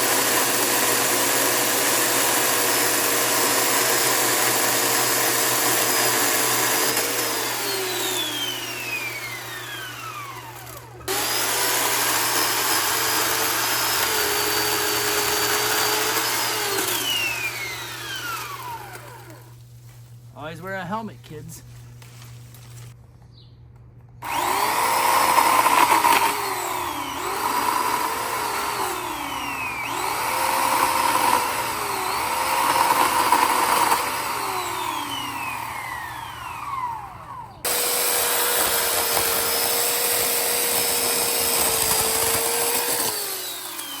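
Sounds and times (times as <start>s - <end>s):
electric chainsaw cutting: 0.0s - 19.6s, 24.2s - 44.0s.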